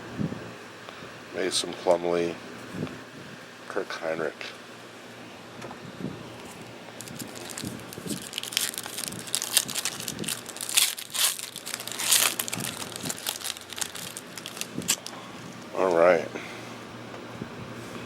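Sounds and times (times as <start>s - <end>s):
plastic wrapper crinkling and tearing: 6.4s - 16.0s.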